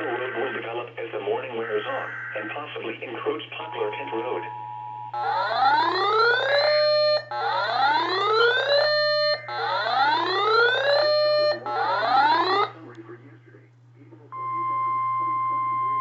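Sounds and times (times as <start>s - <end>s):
steady low hum: 0.0s - 16.0s
rising electronic alert whoops: 5.2s - 12.7s.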